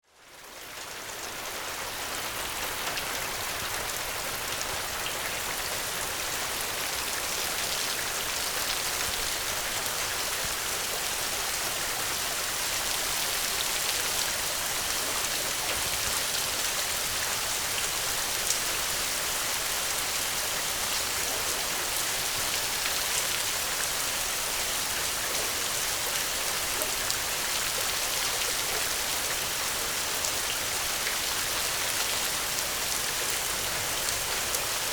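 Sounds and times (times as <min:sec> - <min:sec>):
steady rain falling: 0:00.0 - 0:34.9.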